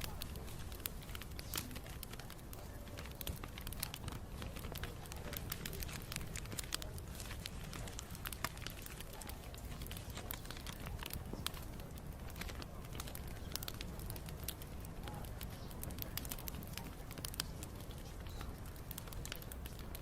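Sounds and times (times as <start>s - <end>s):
wood fire crackling and popping: 0.0s - 20.0s.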